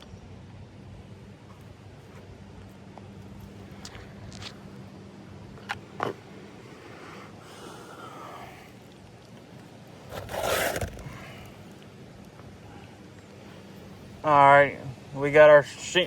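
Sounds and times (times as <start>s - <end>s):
shingle scraping: 10.0s - 11.5s.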